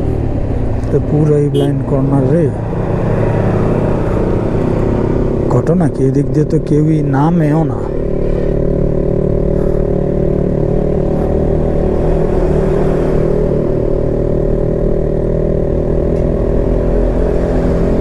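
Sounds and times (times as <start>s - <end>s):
motorcycle engine under load: 4.4s - 12.0s.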